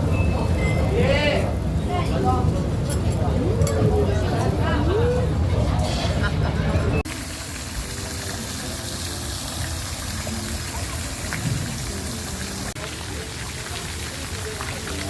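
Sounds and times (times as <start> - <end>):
faint voices: 0.0 - 7.1, 7.7 - 15.0.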